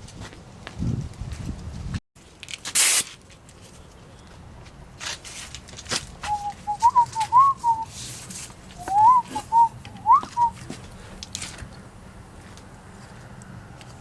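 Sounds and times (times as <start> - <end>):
person whistling a tune: 6.3 - 7.9, 8.8 - 10.6.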